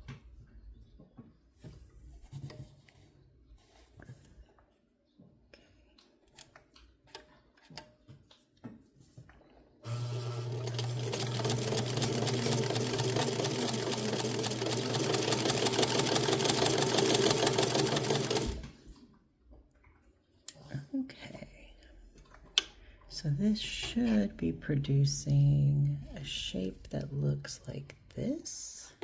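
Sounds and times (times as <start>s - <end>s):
sewing machine running: 9.8s - 18.8s.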